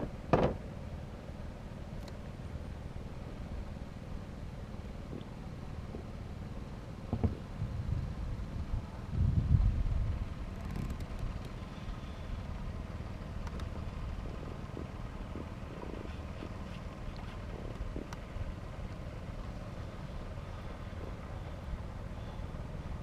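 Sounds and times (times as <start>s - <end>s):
low engine drone: 0.0s - 23.0s
faint clicks and knocks: 10.6s - 11.7s, 13.4s - 19.0s.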